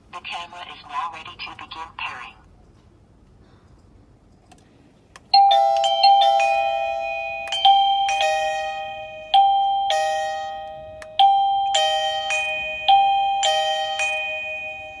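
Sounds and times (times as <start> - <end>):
doorbell chime tune: 5.3 - 15.0.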